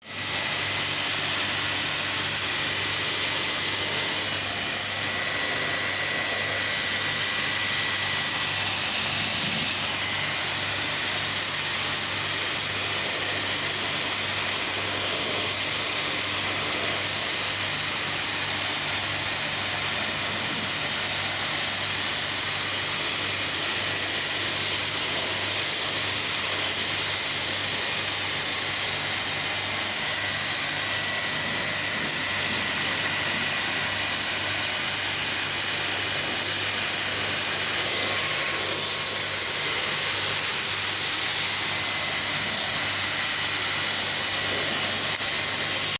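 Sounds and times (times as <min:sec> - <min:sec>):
low pulsing drone: 0:00.1 - 0:23.2
rushing hiss of machinery: 0:00.1 - 0:45.9.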